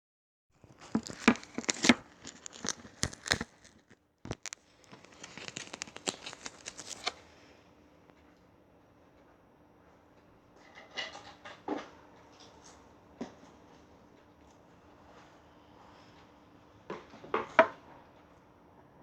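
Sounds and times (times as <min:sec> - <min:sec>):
slime squeezed by hand crackling: 0:00.8 - 0:07.1.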